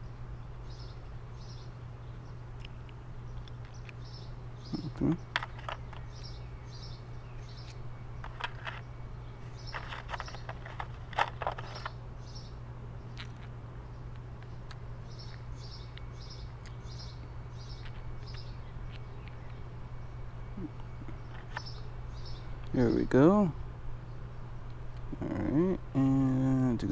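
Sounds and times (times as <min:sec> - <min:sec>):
bird chirping: 0:00.0 - 0:26.7
steady low hum: 0:00.0 - 0:26.9
light clicks and knocks of parts: 0:02.6 - 0:04.0, 0:04.7 - 0:06.4, 0:07.4 - 0:08.9, 0:09.5 - 0:12.0.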